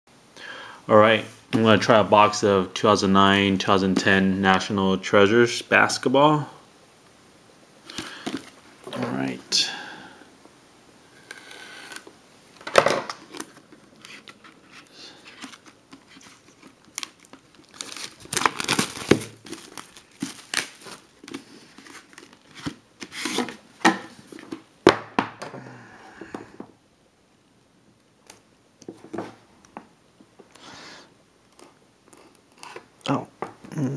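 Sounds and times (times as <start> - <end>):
wrapping torn and crinkled: 13.3 - 23.4.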